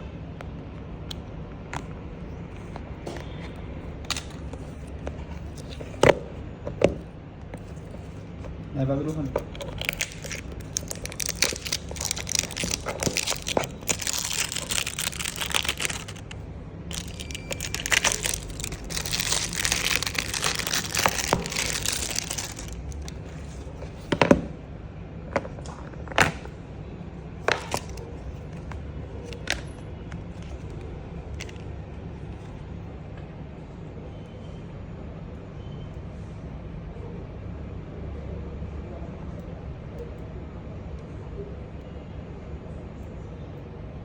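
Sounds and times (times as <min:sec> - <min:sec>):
plastic film crinkling: 0:07.6 - 0:24.3, 0:27.5 - 0:29.8.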